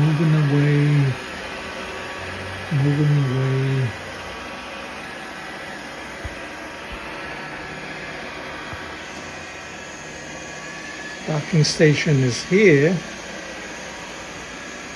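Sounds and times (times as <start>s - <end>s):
man's voice: 0.0s - 1.2s, 2.7s - 4.0s, 11.3s - 13.0s
robot vacuum whirring: 0.0s - 14.9s.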